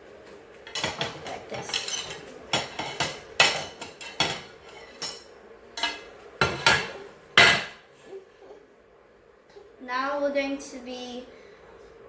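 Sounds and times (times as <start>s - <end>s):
utensils knocking against a bowl: 0.6s - 7.8s.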